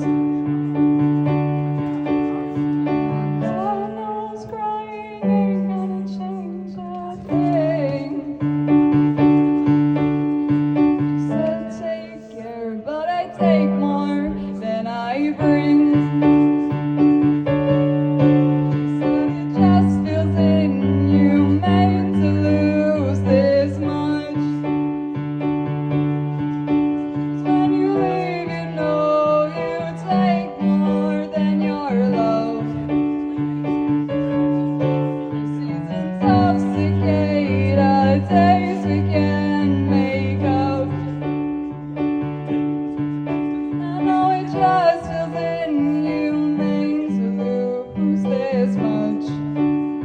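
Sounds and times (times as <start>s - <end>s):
person singing: 0.0s - 24.8s, 26.7s - 41.5s, 43.2s - 49.9s
electric piano chords: 0.0s - 50.0s.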